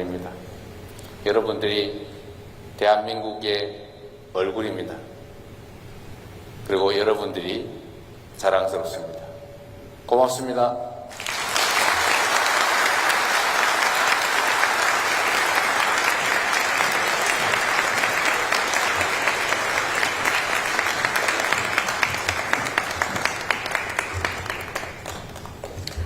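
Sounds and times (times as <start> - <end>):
audience applauding: 11.1 - 26.0.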